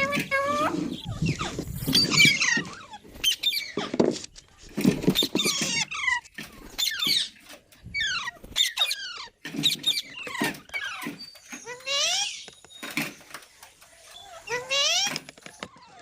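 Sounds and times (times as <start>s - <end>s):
parakeet screeching calls: 0.0s - 3.9s, 5.2s - 12.5s, 14.1s - 15.2s.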